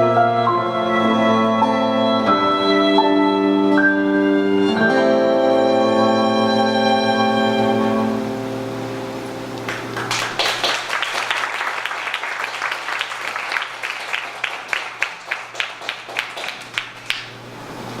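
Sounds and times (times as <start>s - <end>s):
music: 0.0s - 9.9s
audience applause: 9.6s - 17.4s.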